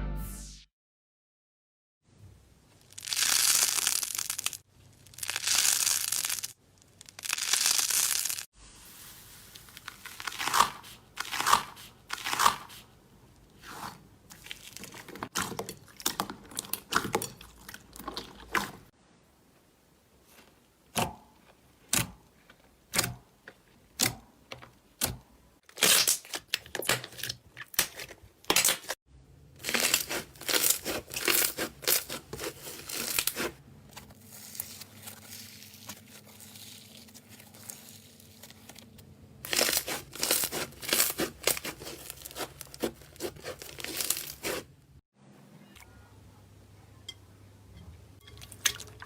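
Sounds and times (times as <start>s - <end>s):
slime popping and crackling: 2.8s - 8.5s, 9.6s - 12.7s, 29.6s - 33.5s, 39.4s - 44.6s.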